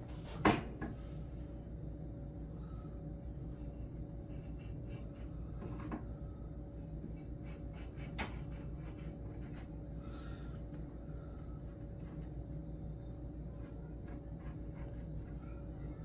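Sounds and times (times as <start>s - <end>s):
pencil scratching on wood: 4.2s - 6.1s, 7.1s - 9.8s, 11.6s - 12.6s, 13.5s - 15.5s.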